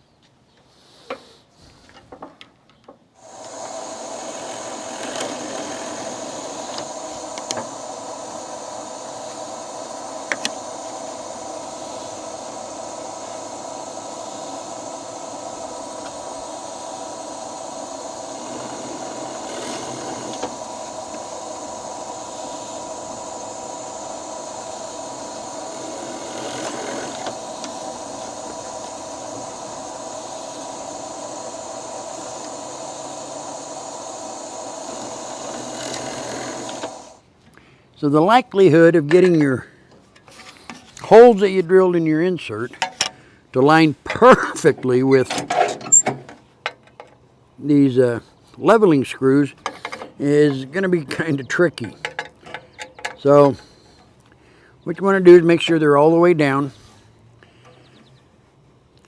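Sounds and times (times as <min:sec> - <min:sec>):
drill clicks and scrapes in wood: 0:03.2 - 0:37.2, 0:49.6 - 0:54.1
drill press motor humming: 0:03.2 - 0:37.2.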